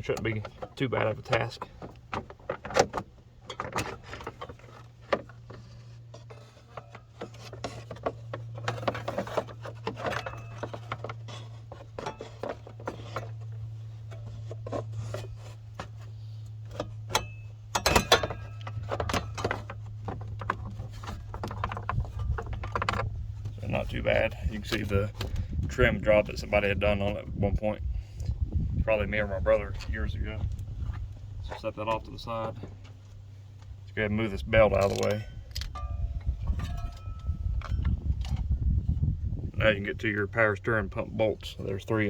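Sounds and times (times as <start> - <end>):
plastic scraping and knocking: 0.0 - 13.6, 18.7 - 26.4
steady low hum: 0.0 - 42.0.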